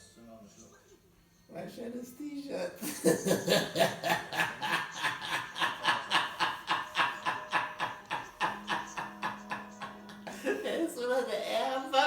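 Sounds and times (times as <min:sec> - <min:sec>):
person laughing hard: 0:03.0 - 0:10.8.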